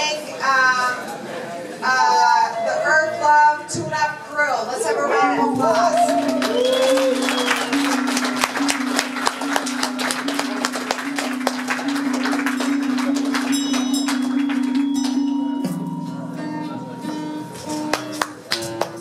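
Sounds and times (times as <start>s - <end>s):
voice calling out: 4.8s - 6.6s
held musical note droning: 5.2s - 17.9s
audience clapping: 5.4s - 15.8s, 17.6s - 19.0s.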